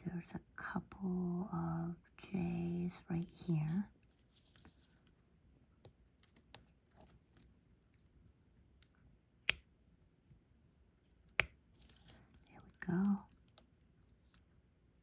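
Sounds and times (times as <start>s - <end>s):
pen tapping resin beads: 8.8s - 9.7s, 11.3s - 13.6s.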